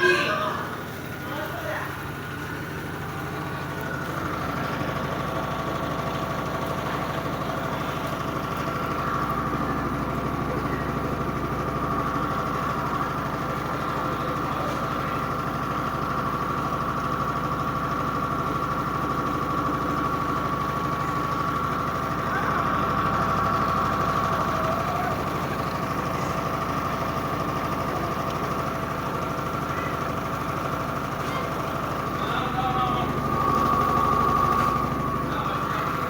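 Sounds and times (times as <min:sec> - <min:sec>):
washing machine spinning: 0:00.0 - 0:36.0
high steady whine: 0:31.7 - 0:36.0.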